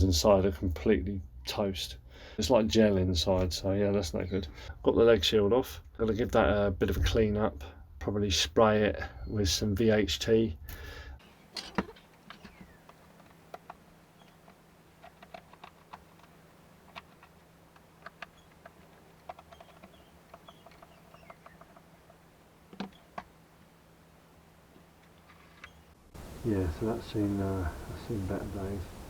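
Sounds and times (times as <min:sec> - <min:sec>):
low steady hum: 0:09.2 - 0:29.0.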